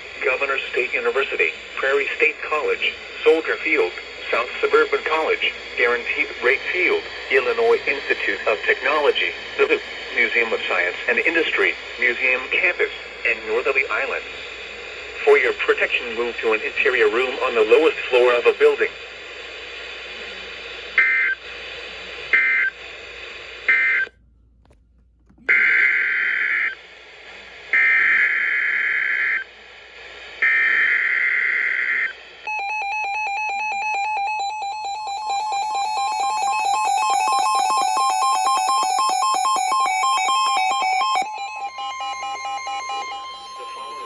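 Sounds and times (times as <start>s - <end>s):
digital data tone bursts: 32.5s - 44.0s
two-tone attention signal: 32.5s - 44.0s.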